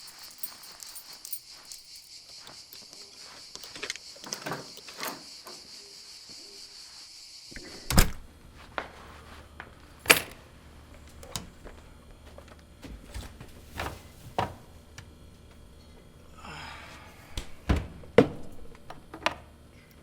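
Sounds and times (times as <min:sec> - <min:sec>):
steady high hiss: 0:00.0 - 0:08.2
door shutting with heavy thud: 0:07.6 - 0:08.3, 0:17.4 - 0:18.6.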